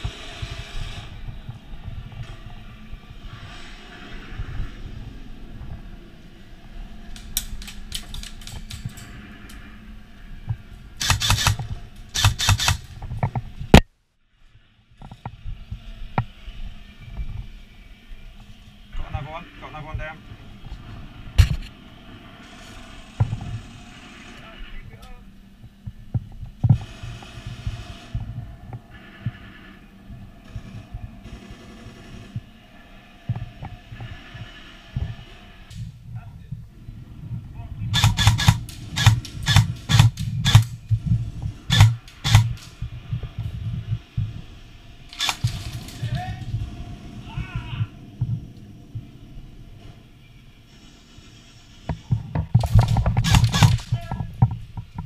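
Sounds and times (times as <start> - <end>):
sharp clicks: 7.1 - 9.6, 11.0 - 13.9, 38.0 - 41.0, 41.7 - 42.8, 45.1 - 46.2, 51.9 - 54.1
airsoft guns firing: 11.0 - 13.0, 38.0 - 40.8, 41.7 - 42.7, 45.1 - 46.4, 52.6 - 54.1
gear rustling: 43.5 - 46.7.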